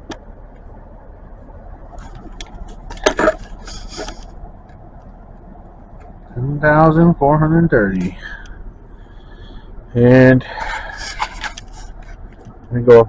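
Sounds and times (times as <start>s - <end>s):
steady low hum: 0.0s - 13.0s
scraping rustle: 1.9s - 4.4s, 10.8s - 12.3s.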